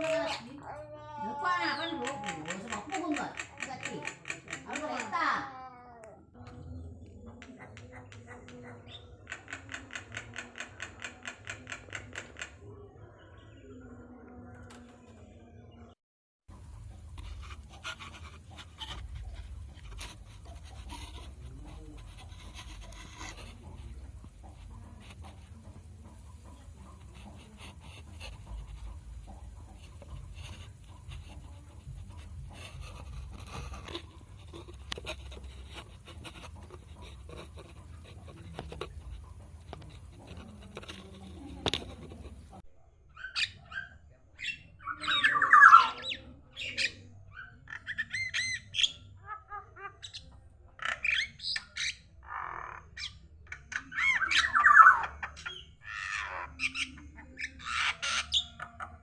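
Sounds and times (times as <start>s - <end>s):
bird squawking and chattering: 43.2s - 59.0s.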